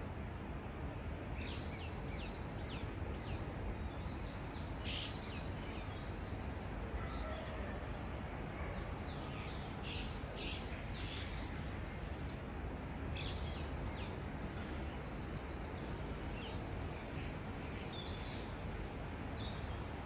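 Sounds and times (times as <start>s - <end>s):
distant city traffic rumble: 0.1s - 20.0s
small birds chirping: 13.2s - 19.9s.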